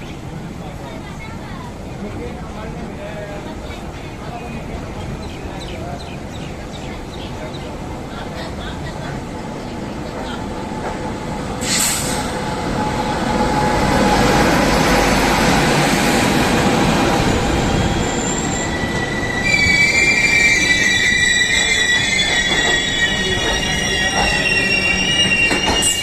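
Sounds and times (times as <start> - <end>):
train running on rails: 0.0 - 26.0
short hiss: 11.6 - 12.4
high-pitched wheel squeal: 17.7 - 26.0.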